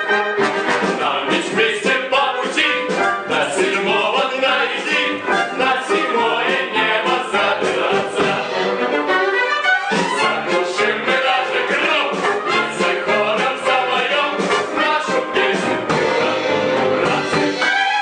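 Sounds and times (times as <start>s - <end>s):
theatre orchestra playing: 0.0s - 18.0s
people singing: 0.8s - 9.1s, 9.9s - 18.0s.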